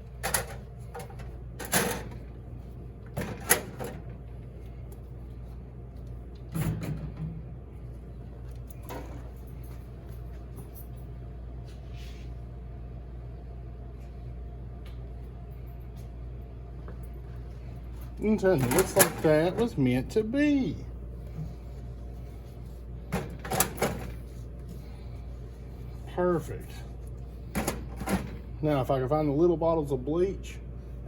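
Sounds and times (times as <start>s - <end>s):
steady low hum: 0.0s - 31.0s
knocks and clatters of parts: 18.5s - 19.7s.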